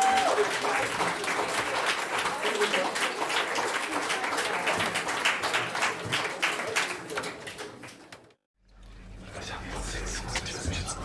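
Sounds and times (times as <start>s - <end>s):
audience applauding: 0.0s - 8.2s.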